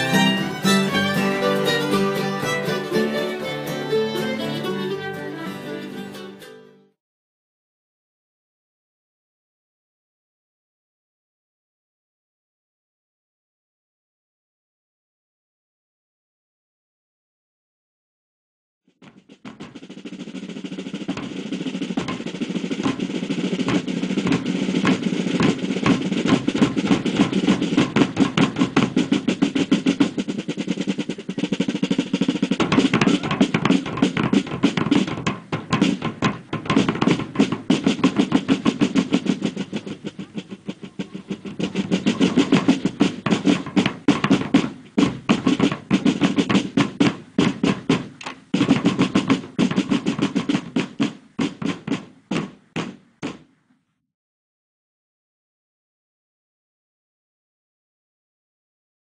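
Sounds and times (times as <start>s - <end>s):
bass drum: 0.0s - 3.2s, 19.0s - 53.4s
snare drums rolling cadence: 0.0s - 6.6s, 19.0s - 53.6s.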